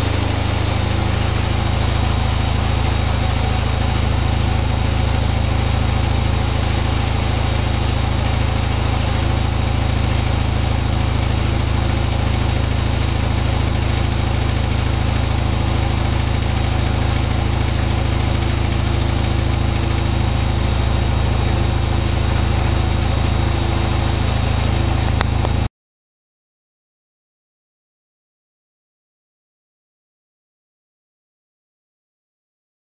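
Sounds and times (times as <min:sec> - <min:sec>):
washing machine spinning: 0:00.0 - 0:25.7.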